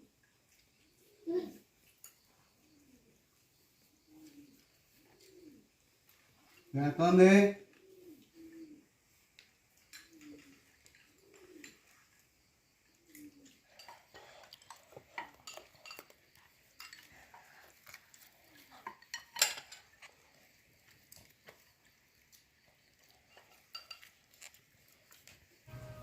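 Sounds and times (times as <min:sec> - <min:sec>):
dishes and utensils clinking: 0:13.7 - 0:17.5, 0:18.8 - 0:20.0, 0:23.3 - 0:24.1, 0:25.7 - 0:26.0.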